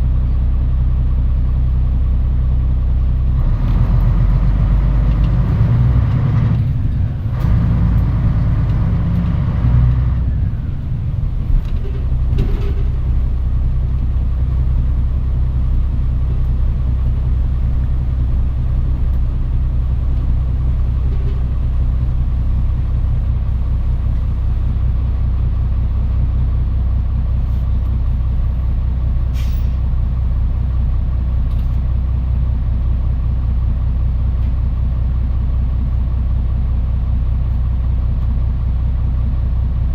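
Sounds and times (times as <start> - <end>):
bus diesel engine rumbling: 0.0 - 39.9
air brake hiss: 29.3 - 29.9.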